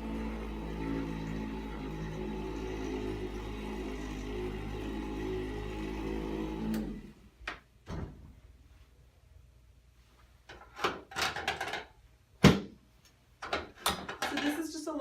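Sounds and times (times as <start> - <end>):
massager motor hum: 0.0 - 7.4
knocks and clacks on treatment table: 10.5 - 12.7.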